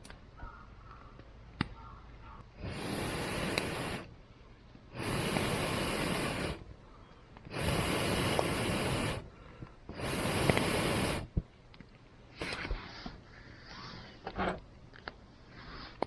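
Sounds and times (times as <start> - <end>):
hissing blows of air on fire: 2.5 - 4.2, 4.9 - 11.4
fire crackling: 2.6 - 12.1.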